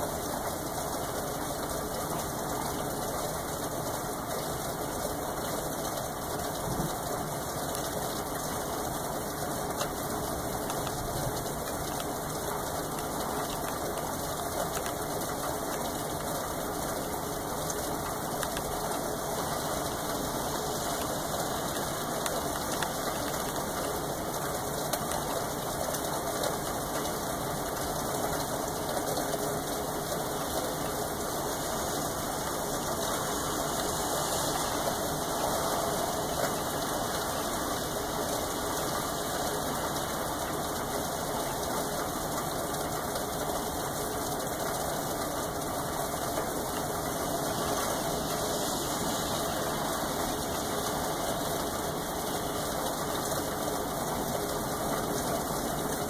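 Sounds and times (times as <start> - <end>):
raindrops ticking: 0.0 - 56.0
steady rain hiss: 0.0 - 56.0.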